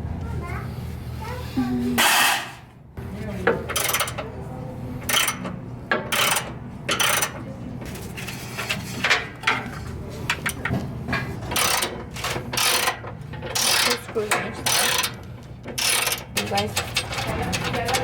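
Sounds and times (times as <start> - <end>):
ratchet clicking and scraping: 3.7 - 4.3, 5.0 - 9.2, 11.5 - 18.0.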